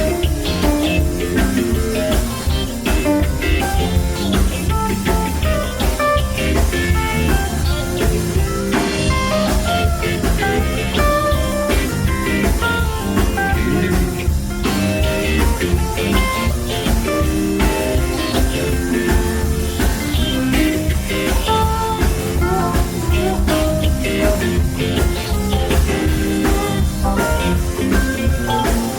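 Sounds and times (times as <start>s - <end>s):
bass: 0.0s - 28.9s
drum kit: 0.0s - 28.9s
guitar: 0.0s - 28.9s.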